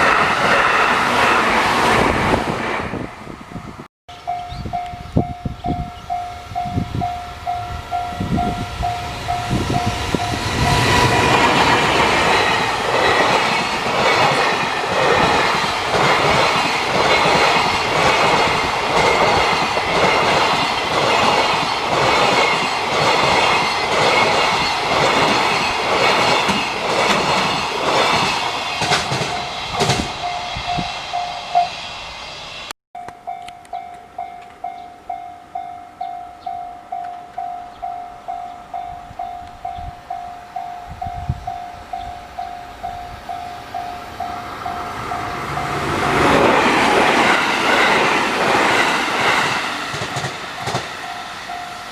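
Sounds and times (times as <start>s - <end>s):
level-crossing warning bell: 4.1s - 26.8s, 28.4s - 31.9s, 33.0s - 51.9s
train wheels clacking on rails: 6.8s - 31.8s, 41.9s - 51.9s.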